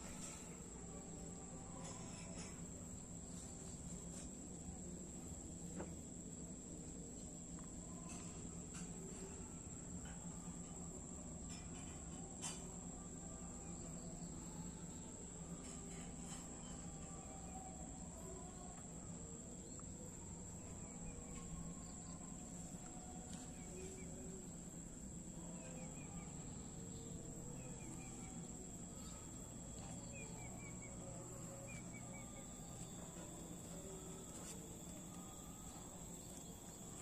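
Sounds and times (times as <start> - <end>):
high insect drone: 0.0 - 37.0
low steady hum: 0.0 - 37.0.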